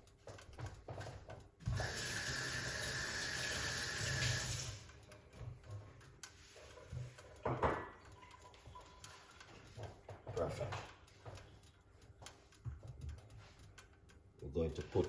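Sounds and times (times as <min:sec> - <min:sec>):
water running from tap: 0:01.6 - 0:05.0.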